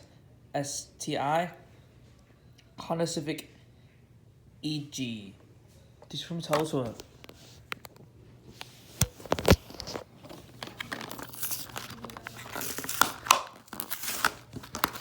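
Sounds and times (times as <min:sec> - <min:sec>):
cardboard and plastic tearing: 0:09.0 - 0:15.0.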